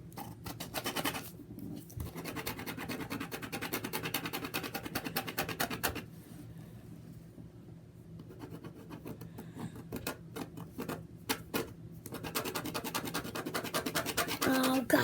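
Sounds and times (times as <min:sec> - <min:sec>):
ballpoint pen scribbling on paper: 0:00.2 - 0:01.3, 0:02.1 - 0:06.0, 0:08.3 - 0:14.9.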